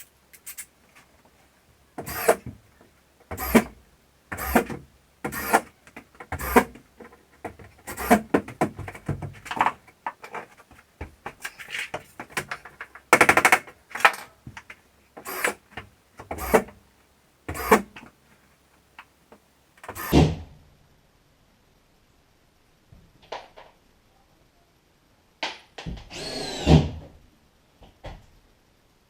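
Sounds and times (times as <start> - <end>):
power screwdriver driving screws: 2.0 - 2.4, 3.4 - 5.7, 6.4 - 6.8, 7.9 - 8.4, 15.2 - 15.6, 16.3 - 16.7, 17.5 - 18.0, 19.9 - 20.2, 26.1 - 26.9.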